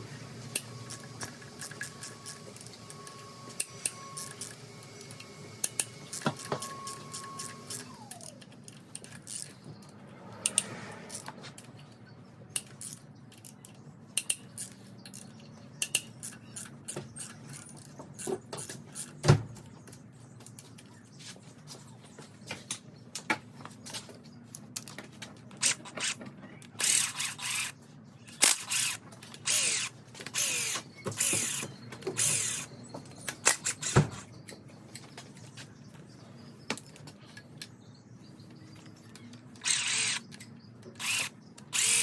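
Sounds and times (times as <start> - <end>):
wrench and metal parts clinking: 12.6 - 19.2.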